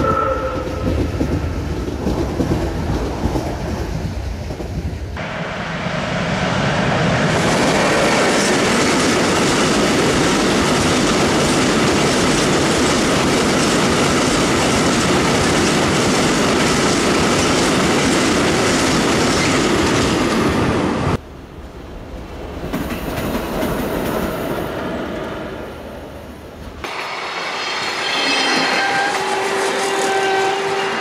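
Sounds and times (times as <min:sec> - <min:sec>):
train wheels clattering on rails: 0:00.0 - 0:05.2, 0:07.3 - 0:20.6, 0:22.5 - 0:25.4.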